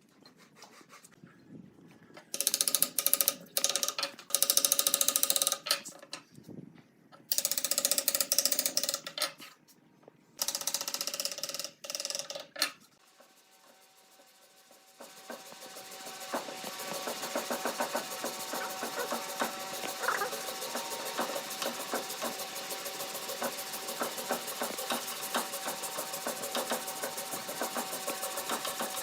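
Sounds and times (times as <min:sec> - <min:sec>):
small motor running: 0:02.4 - 0:05.6, 0:13.0 - 0:29.0
hand tool ratchet clicking: 0:02.4 - 0:06.0, 0:07.3 - 0:09.4, 0:10.4 - 0:12.8, 0:15.2 - 0:29.0.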